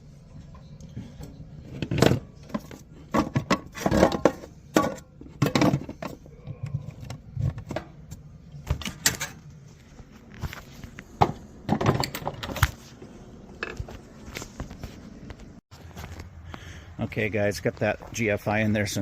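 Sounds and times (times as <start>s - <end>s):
hand tools and hardware clattering: 1.2s - 9.5s.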